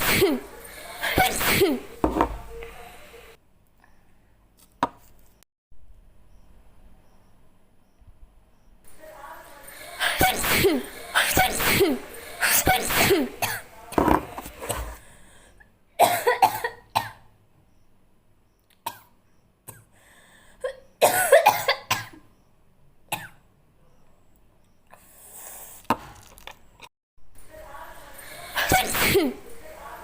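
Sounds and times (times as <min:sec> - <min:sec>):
woman coughing: 0:00.0 - 0:01.9, 0:10.0 - 0:13.7, 0:16.0 - 0:17.2, 0:20.6 - 0:22.2, 0:28.6 - 0:29.4
woman sneezing: 0:00.0 - 0:01.9, 0:10.0 - 0:13.6, 0:28.6 - 0:29.4.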